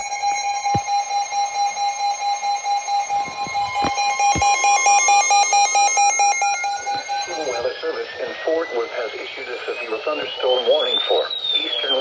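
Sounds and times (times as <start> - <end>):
high beeping alarm tones: 0.0 - 12.0.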